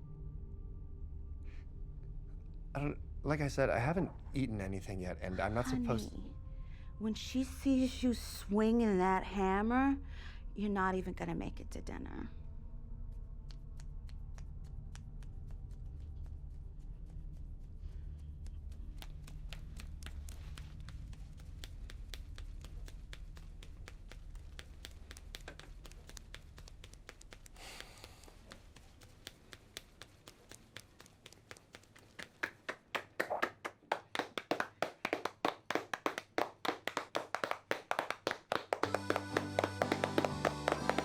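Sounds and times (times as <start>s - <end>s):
quick sharp taps: 19.0s - 41.0s.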